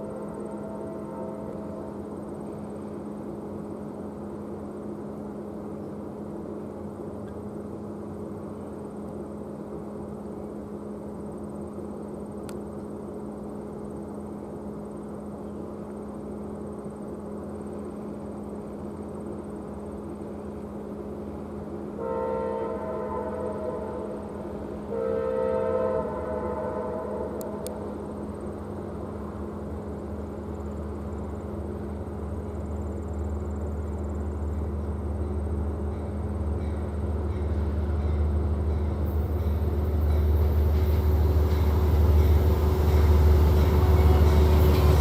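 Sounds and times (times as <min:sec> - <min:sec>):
train horn chord: 0:00.0 - 0:02.1, 0:22.0 - 0:27.7, 0:37.3 - 0:45.0
low engine drone: 0:00.0 - 0:22.2, 0:25.8 - 0:45.0.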